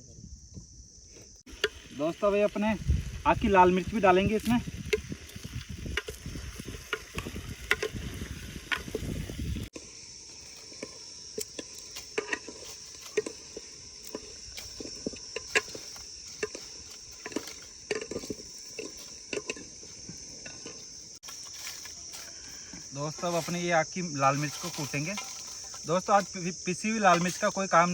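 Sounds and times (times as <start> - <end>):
crickets chirping: 0.0 - 27.9
chicken frying with pops: 1.4 - 22.3.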